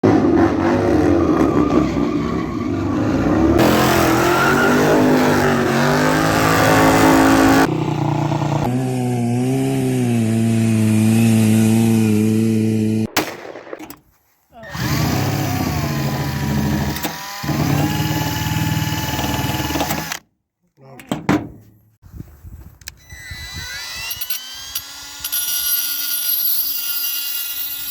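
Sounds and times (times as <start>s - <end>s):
engine revving: 0.0s - 13.1s.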